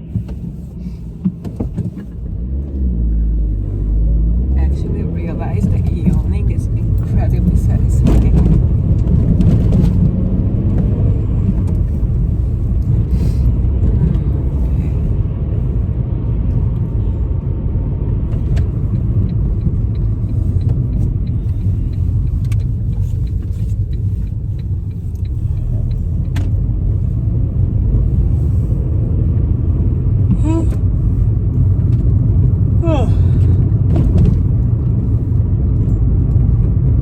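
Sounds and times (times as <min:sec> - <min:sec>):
car engine and road noise: 0:00.0 - 0:37.0.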